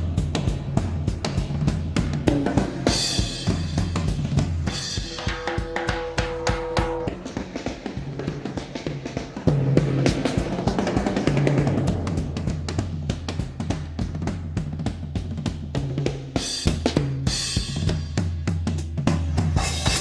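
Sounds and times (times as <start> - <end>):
drum kit fast beat: 0.0 - 20.0
cymbal crashes: 2.9 - 7.7, 19.6 - 20.0.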